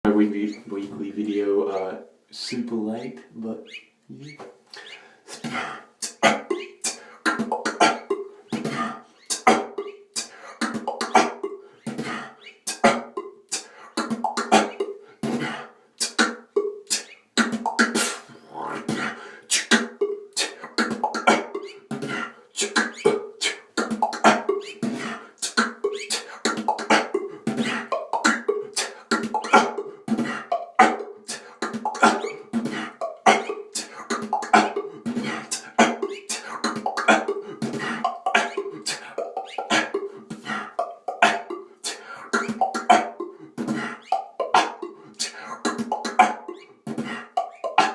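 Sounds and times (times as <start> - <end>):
beatboxing: 0.0 - 47.9
cough snare: 6.0 - 6.5, 7.3 - 8.8, 9.4 - 9.8, 10.6 - 11.4, 14.2 - 14.8, 34.3 - 34.8, 35.5 - 36.0, 41.1 - 41.5, 42.7 - 43.2, 44.6 - 44.8.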